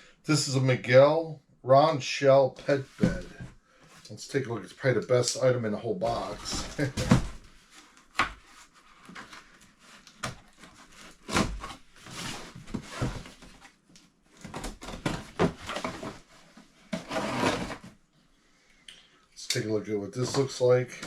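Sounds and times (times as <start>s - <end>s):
packaging rustling and scraping: 6.0s - 18.0s.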